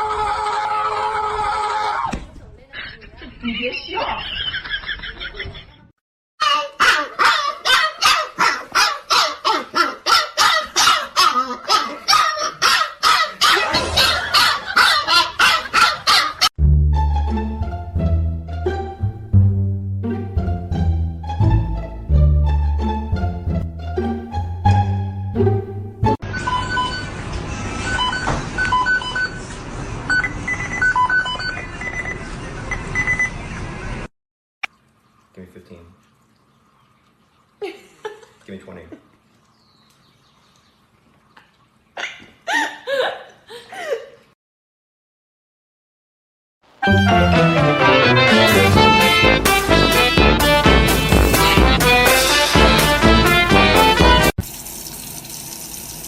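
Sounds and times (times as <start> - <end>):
dog barking: 6.8 - 16.5.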